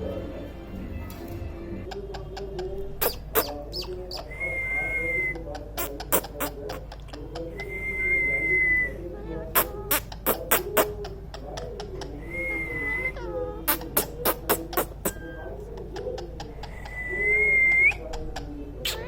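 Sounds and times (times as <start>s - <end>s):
parakeet whistling: 3.0s - 6.6s, 16.6s - 18.1s.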